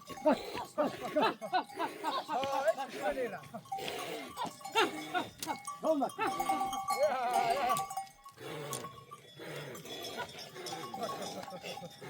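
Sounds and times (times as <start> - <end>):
livestock bell clanking: 0.0 - 12.0
goats bleating: 3.9 - 8.0.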